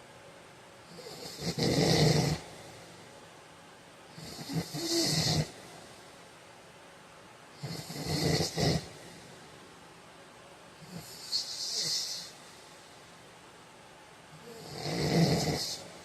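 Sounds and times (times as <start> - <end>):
quiet breathing: 0.8 - 3.3, 4.1 - 6.5, 7.6 - 9.6, 10.7 - 13.4, 14.3 - 16.0
man snoring: 0.9 - 2.8, 4.2 - 5.6, 7.6 - 9.2, 10.8 - 12.4, 14.4 - 16.0.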